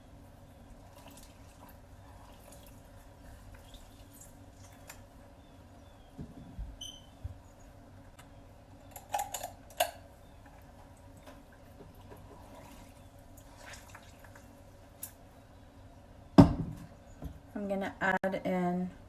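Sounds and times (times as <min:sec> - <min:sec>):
brief squeak: 0:06.8 - 0:07.2.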